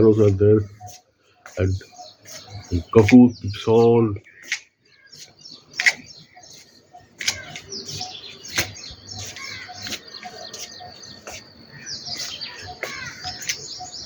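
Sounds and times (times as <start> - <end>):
small birds chirping: 0.0 - 14.0.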